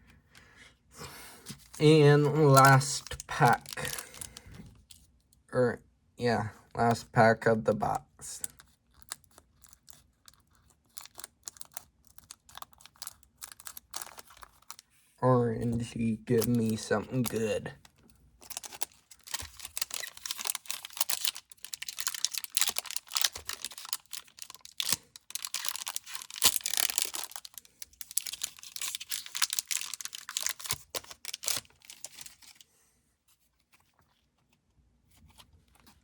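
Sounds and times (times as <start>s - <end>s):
cards rustling: 1.4s - 5.0s, 8.3s - 32.7s
wrapper torn open and crinkling: 2.4s - 4.4s, 8.9s - 14.8s, 18.4s - 32.6s.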